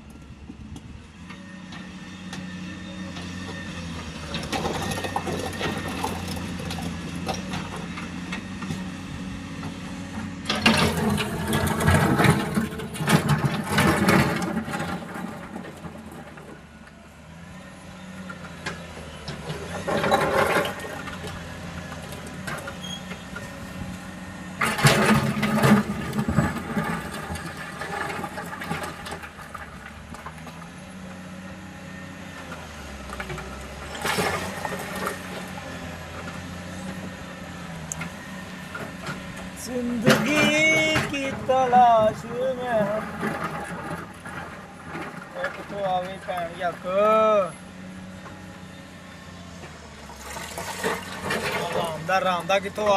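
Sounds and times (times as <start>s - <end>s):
loud clattering noise: 10.4s - 16.6s, 24.6s - 29.7s, 40.0s - 46.5s.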